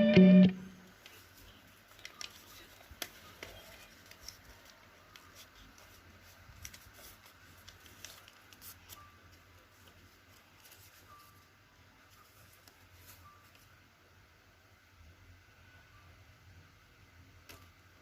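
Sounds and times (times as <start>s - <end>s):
paper rustling and folding: 1.0s - 11.5s, 12.1s - 13.7s.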